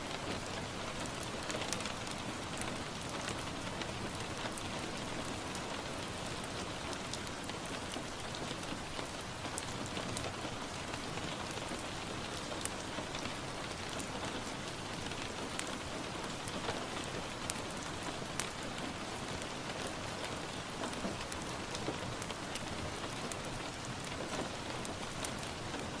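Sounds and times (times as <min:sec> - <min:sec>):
wood fire crackling: 0:00.1 - 0:26.0.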